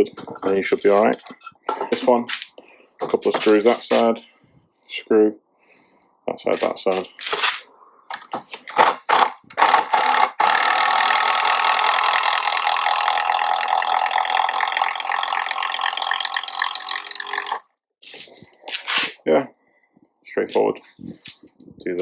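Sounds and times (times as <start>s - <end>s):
impact driver driving screws: 8.6s - 17.6s.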